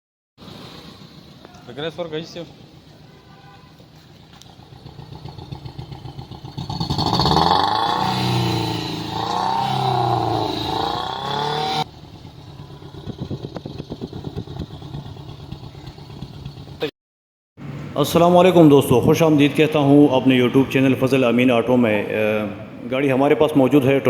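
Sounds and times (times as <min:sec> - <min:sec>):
car engine idling rough: 0:00.4 - 0:03.2, 0:03.8 - 0:16.9
engine revving: 0:04.4 - 0:16.9.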